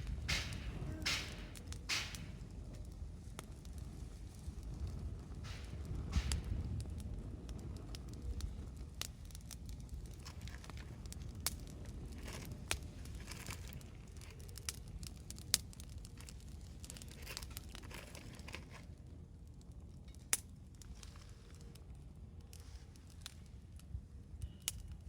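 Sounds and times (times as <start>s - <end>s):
sharp pops: 0.0s - 2.5s, 5.5s - 6.6s
low steady rumble: 0.0s - 8.8s
wood fire crackling: 0.0s - 25.0s.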